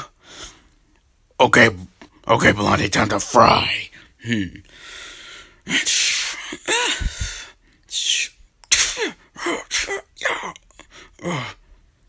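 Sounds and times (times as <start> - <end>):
person grunting: 11.2 - 11.6.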